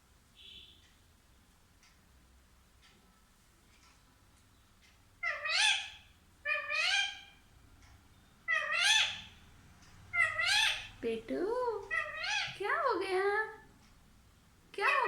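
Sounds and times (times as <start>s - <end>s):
parrot meow-like calls: 5.2s - 7.4s, 8.5s - 9.3s, 10.1s - 10.9s, 11.9s - 12.6s.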